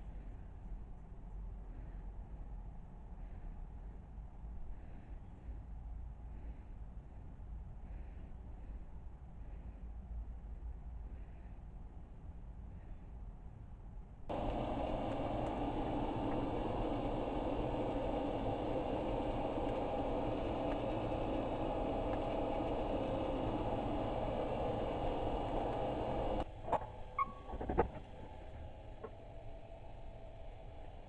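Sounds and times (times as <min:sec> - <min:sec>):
steady machine noise: 0:14.3 - 0:31.0
sharp clicks and knocks: 0:26.4 - 0:28.2.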